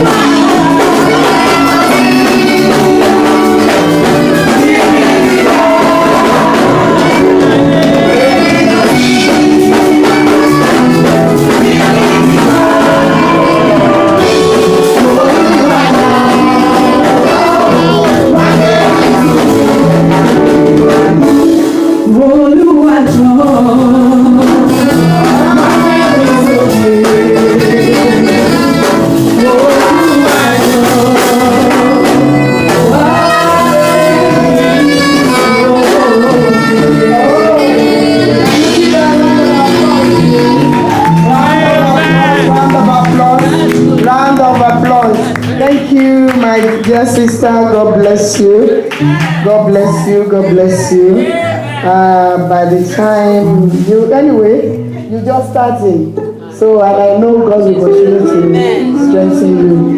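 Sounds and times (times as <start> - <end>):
church singing with accompaniment: 0.0 - 59.9.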